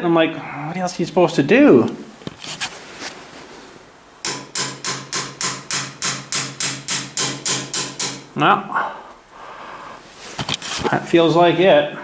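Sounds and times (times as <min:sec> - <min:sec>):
hammer tapping on metal: 0:04.2 - 0:08.3.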